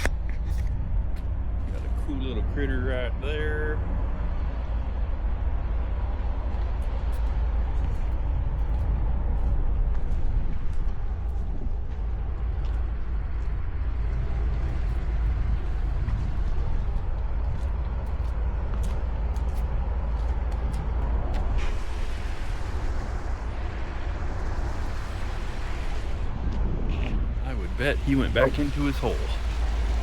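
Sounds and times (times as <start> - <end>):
low rumble: 0.0 - 30.0
hiss: 21.6 - 23.5, 24.2 - 26.3.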